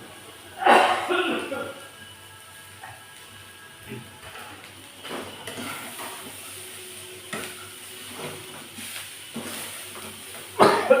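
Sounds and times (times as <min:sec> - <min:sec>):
sambal sizzling in a pan: 0:00.0 - 0:11.0
spatula scraping a pan: 0:04.3 - 0:06.5.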